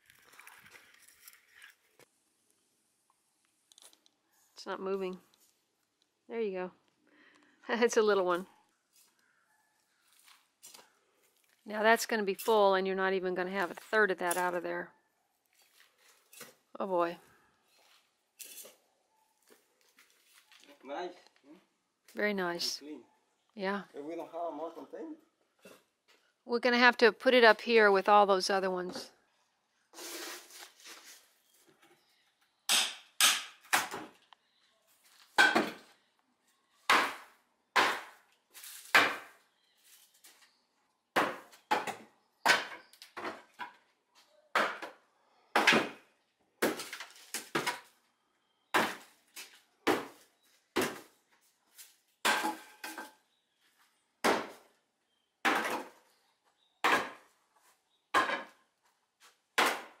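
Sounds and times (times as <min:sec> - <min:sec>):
hand tools scraping soil containers: 0:29.9 - 0:31.3.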